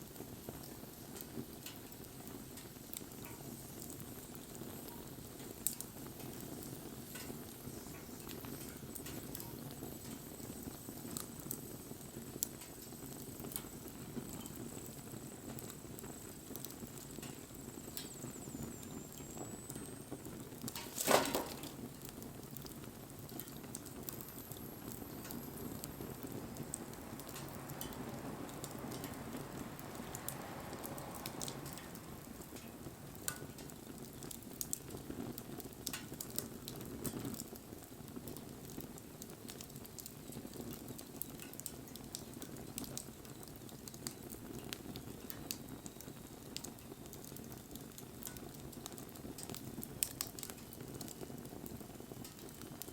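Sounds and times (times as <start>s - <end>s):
wood fire crackling: 0.0s - 52.9s
loud pop from fire: 20.6s - 24.3s.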